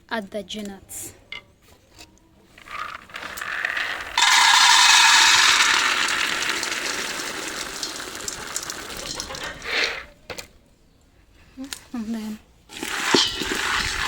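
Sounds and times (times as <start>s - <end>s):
nuts poured into hot saucepan: 2.6s - 10.1s, 12.7s - 14.0s.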